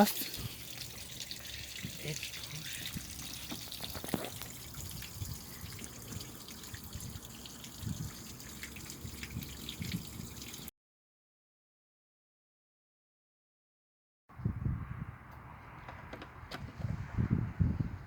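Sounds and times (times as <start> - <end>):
water dripping and trickling: 0.0 - 10.7.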